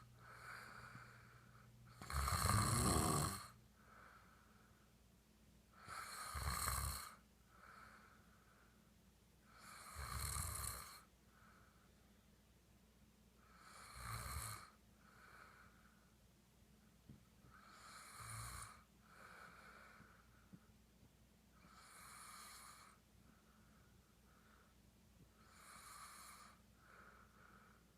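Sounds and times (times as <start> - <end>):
man snoring: 1.9 - 3.6, 5.8 - 7.9, 9.5 - 11.1, 13.5 - 14.8, 17.5 - 19.6, 21.6 - 23.0, 25.4 - 26.6.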